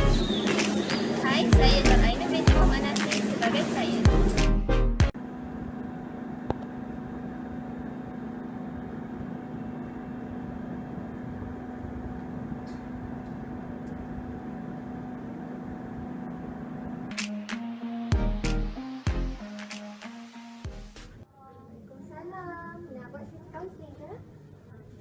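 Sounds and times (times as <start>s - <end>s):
steady room hum: 0.0s - 19.4s.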